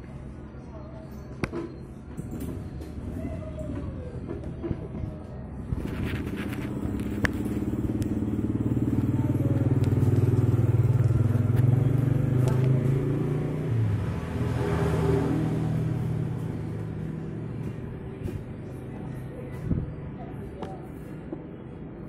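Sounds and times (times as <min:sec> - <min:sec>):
vehicle engine running: 0:05.0 - 0:20.6.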